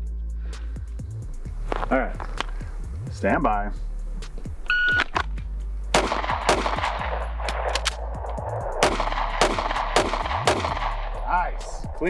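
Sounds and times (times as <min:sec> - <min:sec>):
pistol shots: 0:05.9 - 0:08.2, 0:08.8 - 0:11.2.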